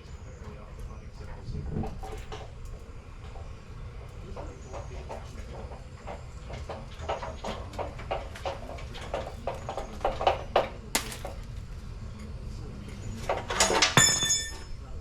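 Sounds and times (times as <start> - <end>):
sharp metallic clank: 11.0 - 11.5.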